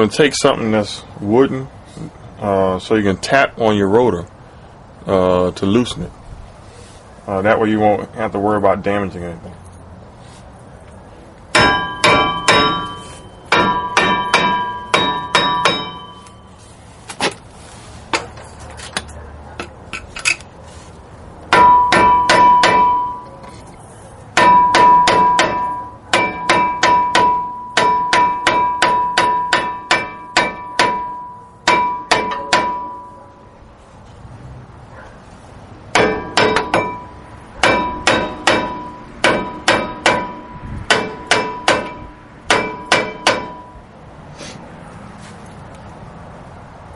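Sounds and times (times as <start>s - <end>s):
hammer blows on ringing brake rotor: 11.5s - 16.6s, 21.5s - 23.6s, 24.4s - 33.5s, 35.9s - 43.9s.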